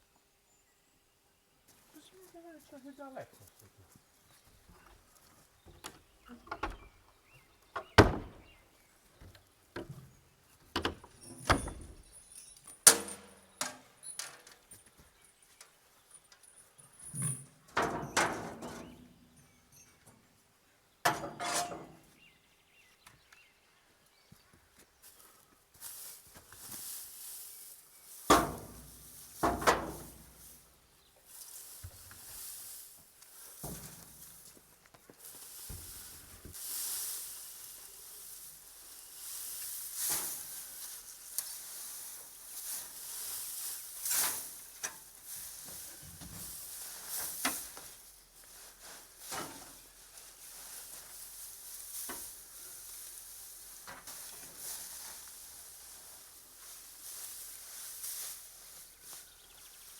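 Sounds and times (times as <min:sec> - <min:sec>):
sharp knocks and clatters: 0:07.8 - 0:08.5, 0:28.3 - 0:30.3
faint hiss: 0:25.0 - 0:59.7.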